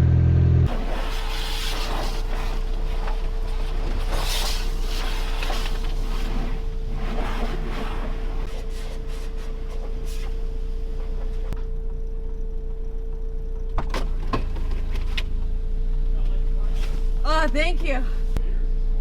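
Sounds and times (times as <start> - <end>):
car engine running: 0.0 - 19.0.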